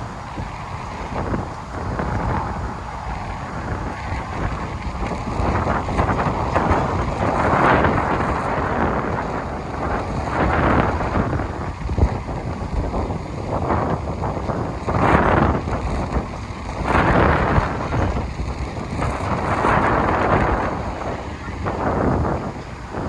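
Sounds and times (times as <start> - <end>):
storm wind buffeting microphone: 0.0 - 23.0.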